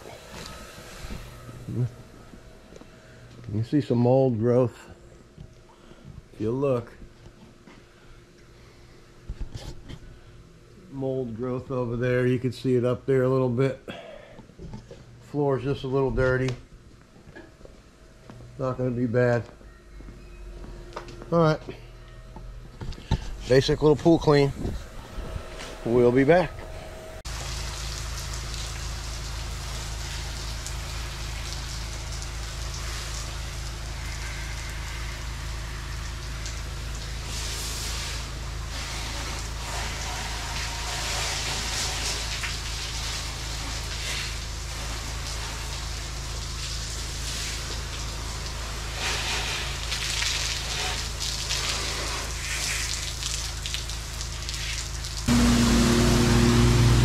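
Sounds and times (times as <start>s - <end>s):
motor and pump drone: 0.0s - 13.4s, 20.0s - 57.0s
low machine hum: 0.0s - 57.0s
loud steady drone: 23.5s - 27.3s, 55.3s - 57.0s
pressure washer spraying water: 25.0s - 57.0s.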